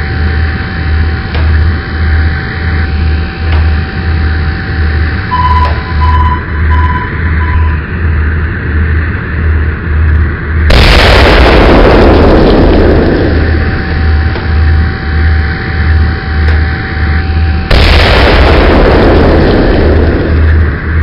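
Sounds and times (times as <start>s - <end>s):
low pulsing engine rumble: 0.0s - 21.0s
short high beeps: 5.3s - 7.8s
loud gun blast: 10.7s - 21.0s.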